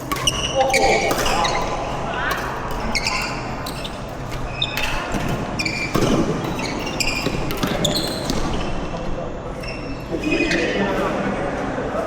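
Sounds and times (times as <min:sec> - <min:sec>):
shoes squeaking on court floor: 0:00.0 - 0:01.8, 0:02.8 - 0:08.9, 0:09.5 - 0:11.1
racket hitting shuttlecock: 0:00.0 - 0:03.2.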